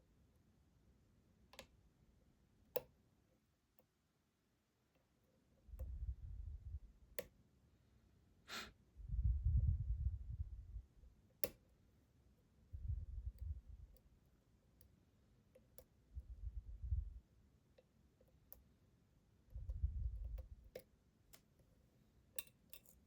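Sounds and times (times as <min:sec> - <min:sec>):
breath-like hiss: 0:08.5 - 0:08.7
lock pick clicking in a lock: 0:11.4 - 0:11.6, 0:22.4 - 0:23.0.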